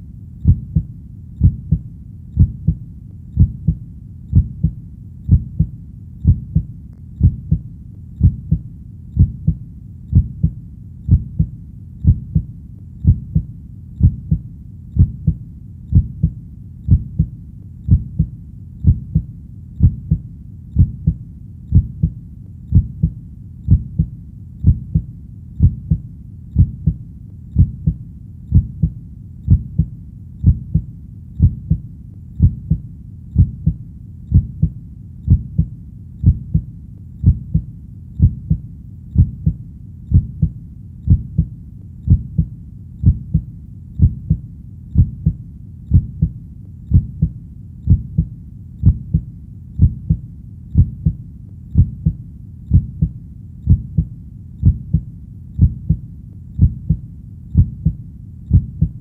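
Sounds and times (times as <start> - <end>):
faint steady hum: 0.0 - 59.0
heartbeat double thump: 0.4 - 1.8, 2.4 - 2.8, 3.4 - 7.6, 8.2 - 8.6, 9.2 - 14.4, 15.0 - 17.3, 17.9 - 20.2, 20.8 - 26.0, 26.6 - 27.0, 27.6 - 31.8, 32.4 - 32.8, 33.4 - 38.6, 39.2 - 41.5, 42.1 - 44.4, 45.0 - 50.2, 50.8 - 51.2, 51.8 - 56.0, 56.6 - 57.0, 57.6 - 59.0.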